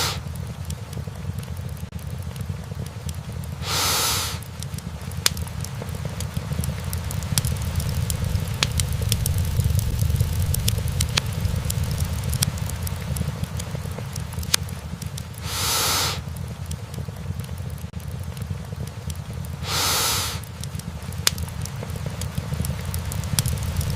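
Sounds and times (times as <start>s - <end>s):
hiss burst: 0.0s - 0.3s, 3.6s - 4.5s, 15.4s - 16.3s, 19.6s - 20.5s
fire crackling and popping: 0.0s - 23.9s
low fire rumble: 0.0s - 23.9s.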